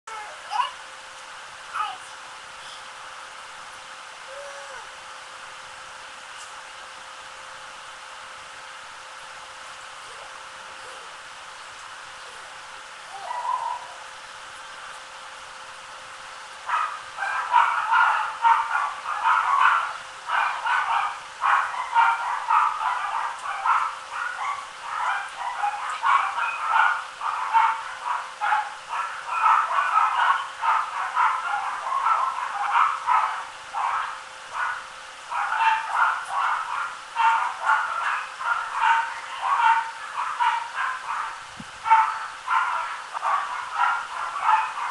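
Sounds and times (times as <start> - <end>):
puppies yapping: 13.1 - 14.2, 16.7 - 44.9.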